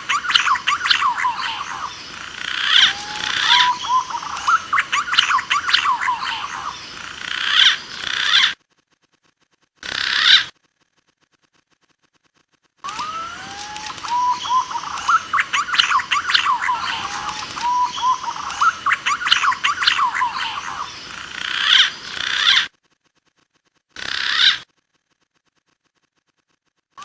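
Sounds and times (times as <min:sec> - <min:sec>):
pigeon whistles and chirps: 0:12.9 - 0:20.2.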